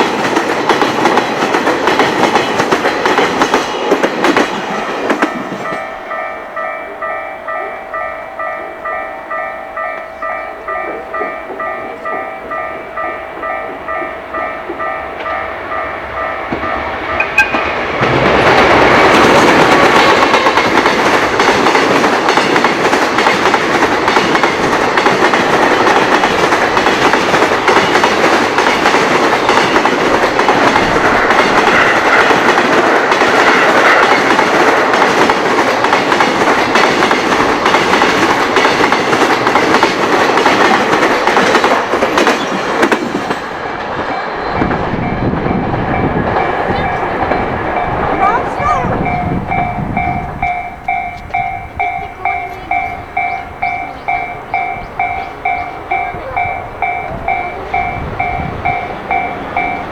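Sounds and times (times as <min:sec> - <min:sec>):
train passing: 0:00.0 - 0:59.9
wheels clacking over rail joints: 0:00.0 - 0:59.9
level crossing bell clanging: 0:04.7 - 0:28.4, 0:44.2 - 0:59.9.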